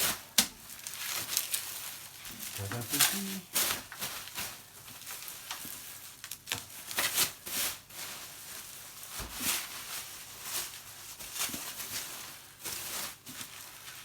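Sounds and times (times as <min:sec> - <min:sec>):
packaging rustling and crinkling: 0:00.0 - 0:14.0.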